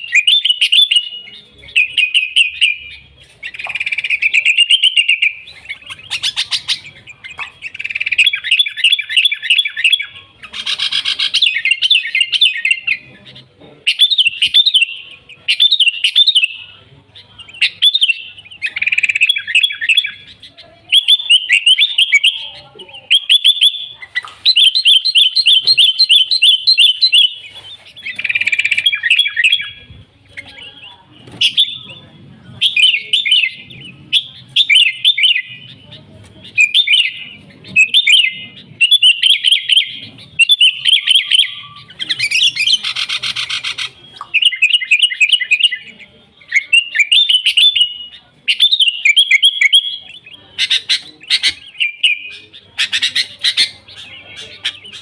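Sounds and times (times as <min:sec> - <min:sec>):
bird singing bright chirps: 0:00.0 - 0:32.0.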